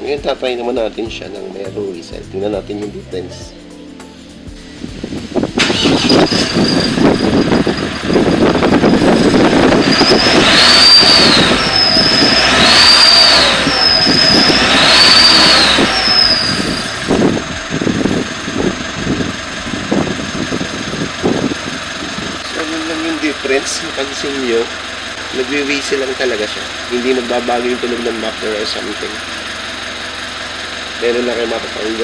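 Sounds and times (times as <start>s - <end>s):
car exhaust revving: 4.7s - 32.0s
turbo whistle: 5.6s - 17.4s.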